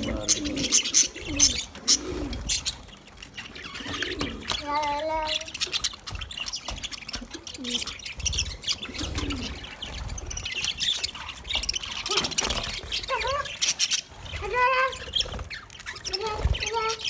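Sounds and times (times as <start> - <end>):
budgies chirping and chattering: 0.0 - 17.0.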